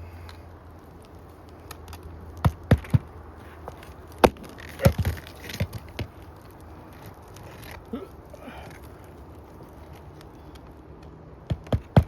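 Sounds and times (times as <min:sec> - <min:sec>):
hammer driving nails: 0:11.5 - 0:12.0.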